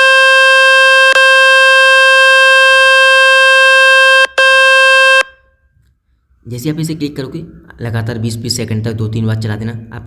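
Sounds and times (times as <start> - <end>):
loud buzzing tone from phone speaker: 0.0 - 5.4.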